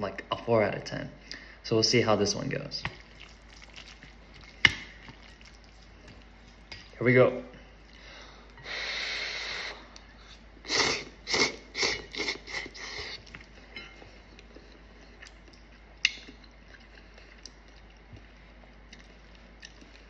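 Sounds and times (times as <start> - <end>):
noodles being slurped: 2.9 - 6.7, 10.7 - 13.6
chewing: 2.9 - 7.0, 11.3 - 20.0.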